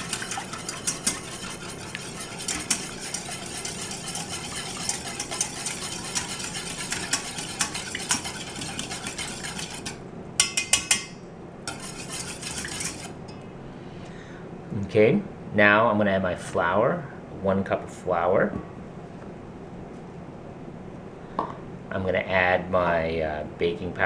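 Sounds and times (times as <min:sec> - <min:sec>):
utensil beating eggs in bowl: 0:00.0 - 0:11.1, 0:11.7 - 0:13.2.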